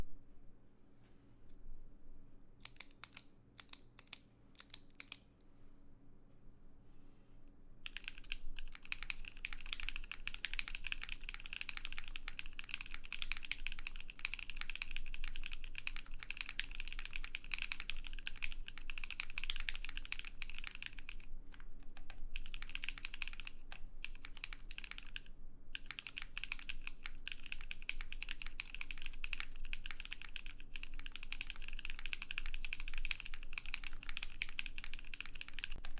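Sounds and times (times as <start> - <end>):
sharp keyboard clicks: 2.6 - 5.2, 7.8 - 35.9
fast typing on mechanical keyboard: 7.8 - 35.9.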